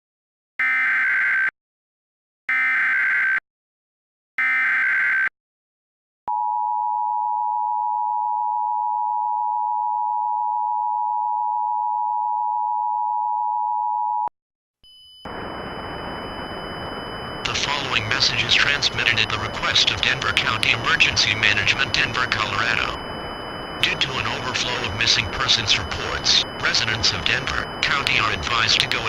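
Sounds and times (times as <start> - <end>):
data burst tones: 14.9 - 29.0
two-tone attention signal: 14.9 - 29.0.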